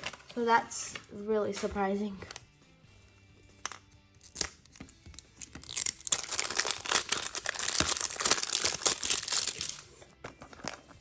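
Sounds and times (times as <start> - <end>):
plastic wrapping crinkling: 5.1 - 11.0.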